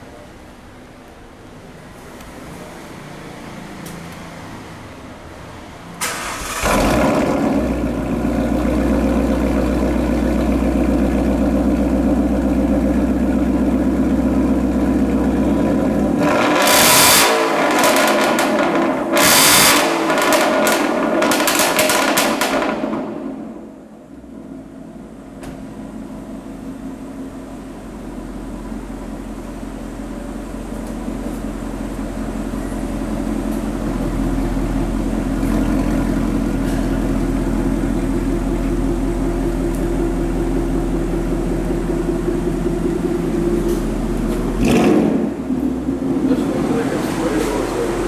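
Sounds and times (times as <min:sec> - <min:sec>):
car engine deep rumble: 0:06.0 - 0:48.0.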